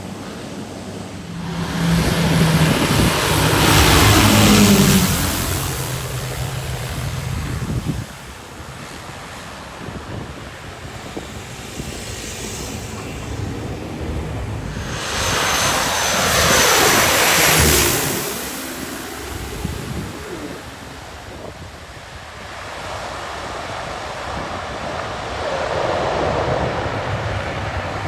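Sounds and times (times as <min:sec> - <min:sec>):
low engine hum: 0:00.0 - 0:21.6
propeller aircraft passing: 0:00.0 - 0:22.1
wind: 0:00.0 - 0:28.0.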